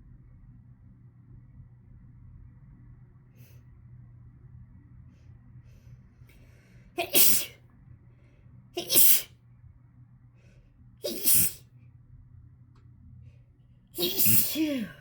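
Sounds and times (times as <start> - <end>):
person sneezing: 7.0 - 7.6, 8.8 - 9.3, 11.0 - 11.6, 14.0 - 15.0.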